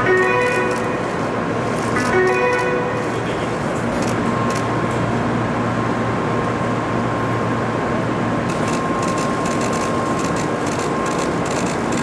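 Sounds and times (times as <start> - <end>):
high-pitched tone: 0.0 - 1.3, 1.9 - 3.5
train running noise: 0.0 - 12.0.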